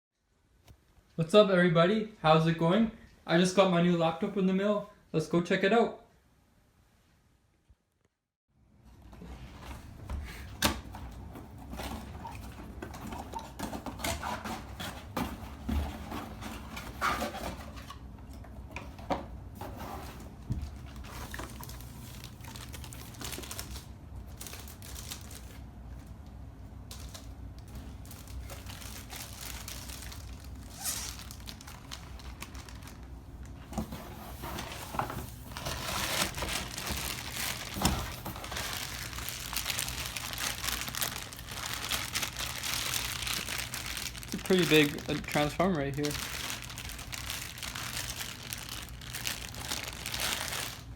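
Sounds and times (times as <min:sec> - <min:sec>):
packaging rustling and crinkling: 0:10.5 - 0:50.9.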